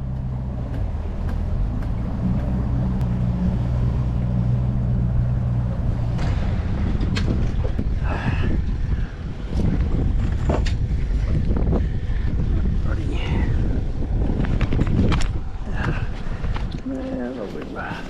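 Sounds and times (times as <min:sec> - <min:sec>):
boat engine running: 0:00.0 - 0:08.1.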